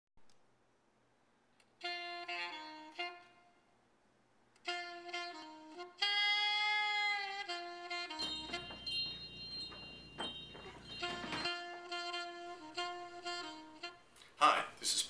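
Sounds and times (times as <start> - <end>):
solo woodwind music: 1.7 - 3.7, 4.6 - 14.2.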